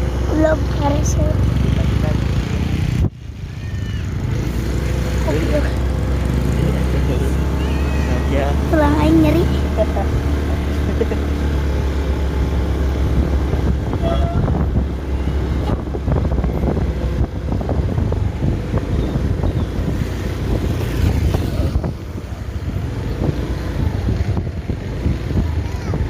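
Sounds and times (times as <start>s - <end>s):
vehicle engine rumble: 0.0s - 26.0s
wind noise on microphone: 2.6s - 3.6s, 12.2s - 26.0s.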